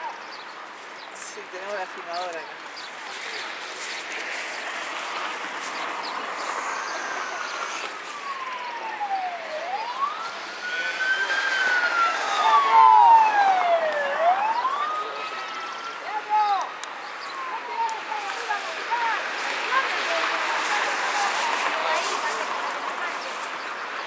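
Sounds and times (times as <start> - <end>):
siren wailing: 6.2 - 22.6.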